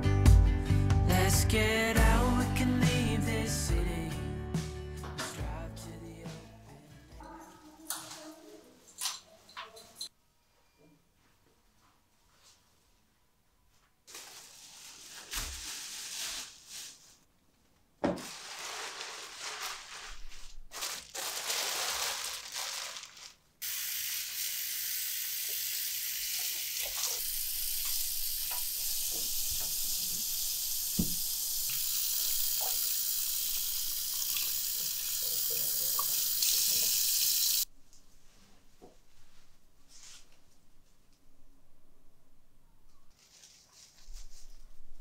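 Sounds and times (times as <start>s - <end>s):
tap water running into sink: 23.6s - 37.6s.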